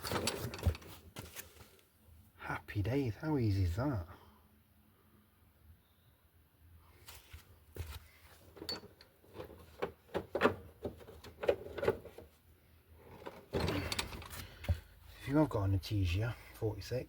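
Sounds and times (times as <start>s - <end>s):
hands handling hard parts: 0.0s - 1.8s, 7.1s - 12.3s, 13.0s - 14.9s.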